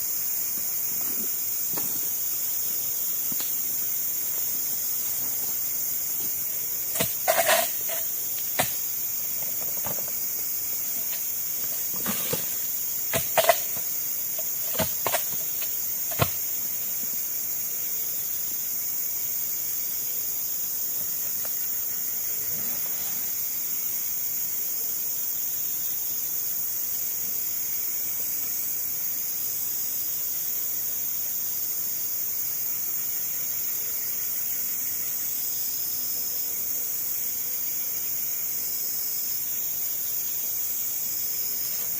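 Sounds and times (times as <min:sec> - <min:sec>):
insects chirping: 0:00.0 - 0:41.9.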